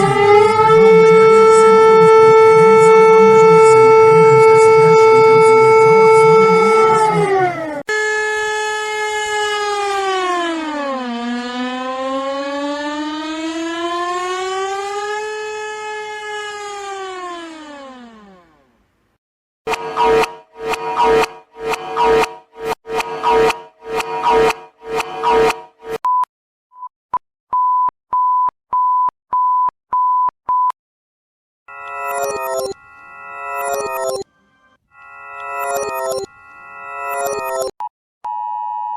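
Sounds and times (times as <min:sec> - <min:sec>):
reversed wailing siren: 0:00.0 - 0:18.8, 0:19.7 - 0:25.8, 0:32.0 - 0:34.7
evenly spaced beeps: 0:19.7 - 0:25.6, 0:31.7 - 0:34.2, 0:35.4 - 0:36.3, 0:37.0 - 0:37.7
electronic chime notes: 0:31.7 - 0:34.2, 0:35.0 - 0:37.7.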